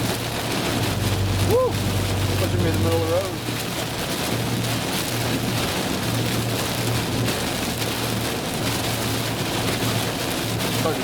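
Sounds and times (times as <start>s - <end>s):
gusty wind: 0.0s - 7.4s
heavy rain hitting a car: 0.0s - 11.0s
road and engine hum: 0.0s - 11.0s.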